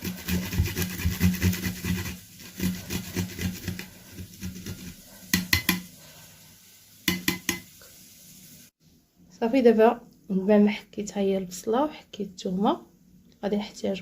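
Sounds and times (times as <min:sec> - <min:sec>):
garlic grating on hand grater: 0:00.0 - 0:05.0
kitchenware knocking: 0:07.1 - 0:07.6.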